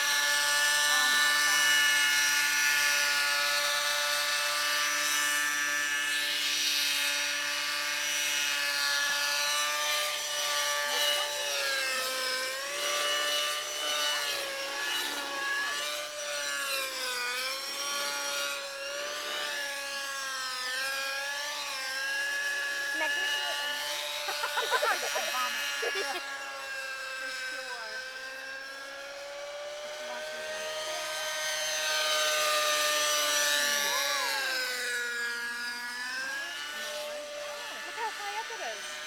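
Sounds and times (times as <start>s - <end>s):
model helicopter rotor whine: 0.0s - 39.0s.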